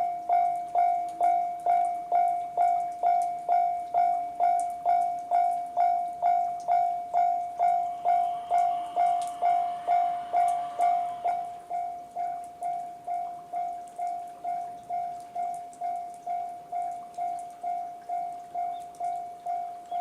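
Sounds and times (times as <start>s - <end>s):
level-crossing alarm bell: 0.0s - 20.0s
passing electric train: 6.7s - 13.4s.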